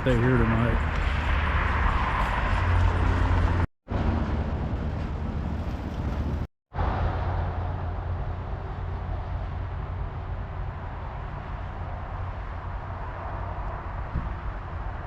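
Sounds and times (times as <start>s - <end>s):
road or wind noise: 0.0s - 15.0s
vehicle engine hum: 0.0s - 15.0s.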